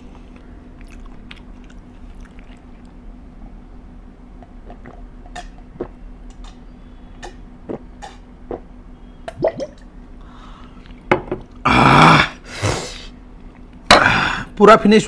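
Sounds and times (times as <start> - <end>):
wet lip smacks and chewing: 0.3 - 3.0.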